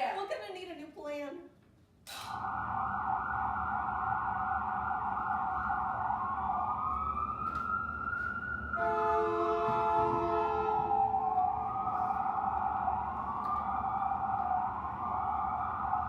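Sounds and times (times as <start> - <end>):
emergency siren wailing: 2.3 - 16.0
blaring multi-note horn: 8.7 - 12.3.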